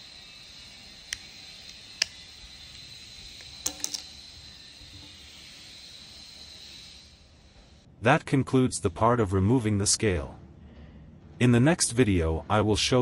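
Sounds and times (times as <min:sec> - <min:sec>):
steady hiss: 0:00.0 - 0:07.9
sharp clicks of small tools: 0:01.0 - 0:04.2.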